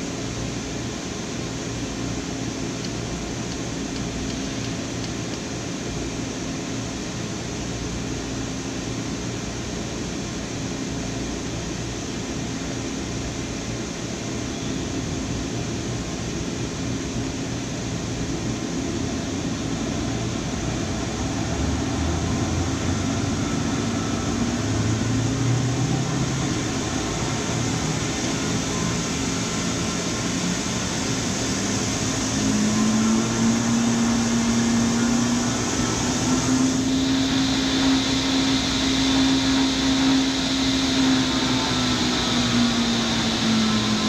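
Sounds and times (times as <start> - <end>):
high steady whine: 0.0 - 44.0
machine hum and hiss: 0.0 - 44.0.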